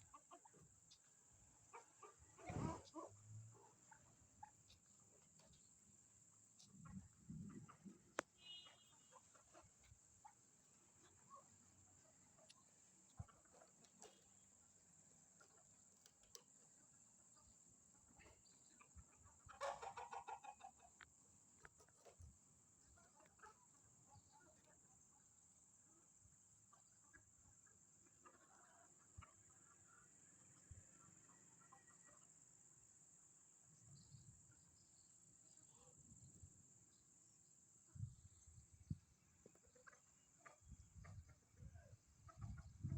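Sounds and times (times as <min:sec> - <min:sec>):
hen clucking: 0:00.0 - 0:01.0, 0:18.2 - 0:21.0, 0:39.5 - 0:41.6, 0:42.2 - 0:42.9
faint bird calls: 0:06.6 - 0:10.4.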